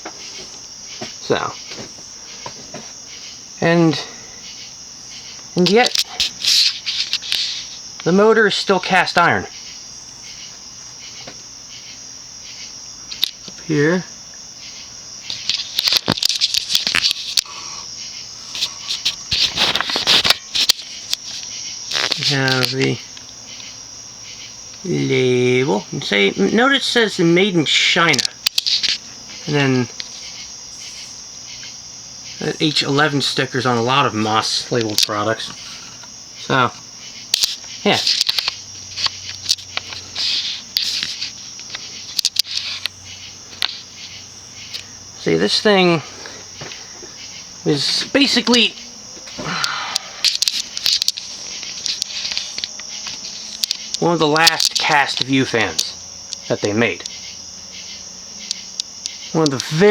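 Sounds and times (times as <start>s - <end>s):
crickets chirping: 0.0s - 59.9s
sharp clicks and rustling: 5.6s - 7.8s, 15.3s - 17.5s, 18.5s - 23.7s, 28.1s - 31.0s, 34.7s - 44.9s, 47.8s - 57.2s
sharp clicks: 28.1s - 29.0s, 40.8s - 42.9s, 49.4s - 57.2s.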